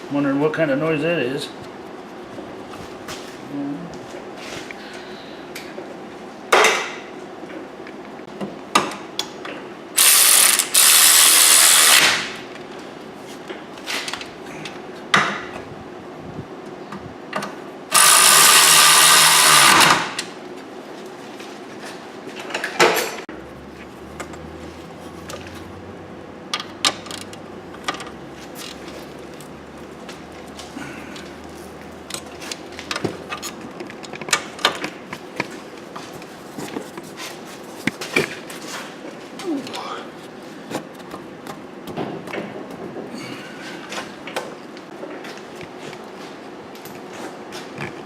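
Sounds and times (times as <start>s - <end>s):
air wrench running: 10.0s - 12.2s, 17.9s - 20.3s.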